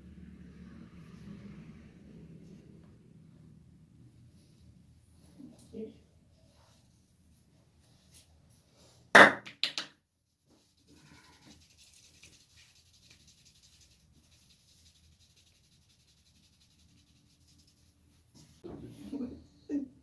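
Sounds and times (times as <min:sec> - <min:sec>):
hands smacking head: 0:09.2 - 0:09.9.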